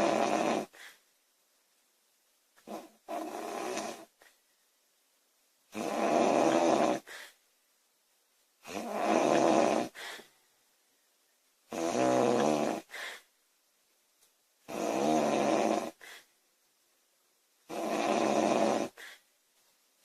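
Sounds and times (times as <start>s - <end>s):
woman snoring loudly: 0.0s - 0.8s, 2.6s - 4.1s, 5.7s - 7.2s, 8.6s - 10.0s, 11.7s - 13.1s, 14.7s - 16.0s, 17.7s - 19.1s.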